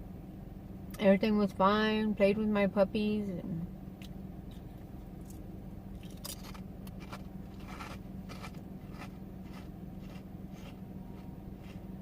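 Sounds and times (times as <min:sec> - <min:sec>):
low hum: 0:00.0 - 0:12.0
crunching chips: 0:06.0 - 0:11.8.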